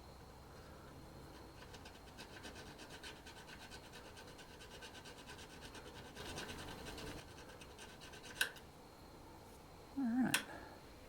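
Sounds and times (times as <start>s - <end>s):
file rasping on metal: 1.6s - 8.6s.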